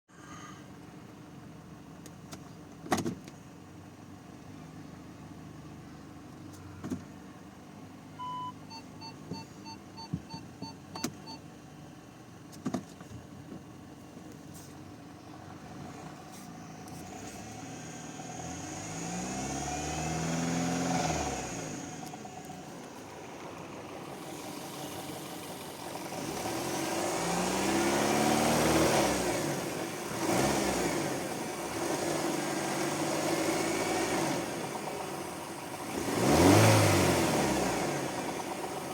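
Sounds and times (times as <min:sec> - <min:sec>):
car engine revving: 0:15.3 - 0:38.9.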